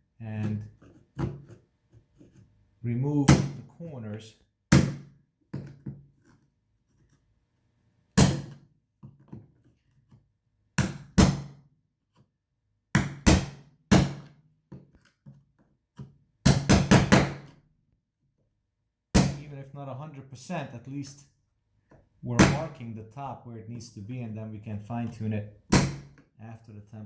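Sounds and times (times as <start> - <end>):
chisel strikes on wood: 4.7 - 6.0, 13.0 - 14.3, 16.0 - 17.5, 19.2 - 19.4, 22.4 - 22.7, 25.7 - 26.2.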